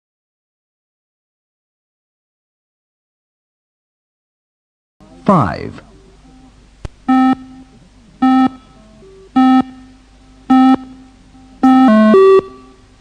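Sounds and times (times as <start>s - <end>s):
electronic countdown beeps: 7.1s - 8.7s, 9.3s - 12.8s.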